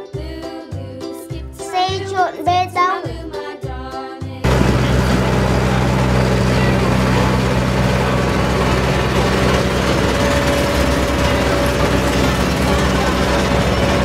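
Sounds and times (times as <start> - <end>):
engine idling: 4.4 - 14.0.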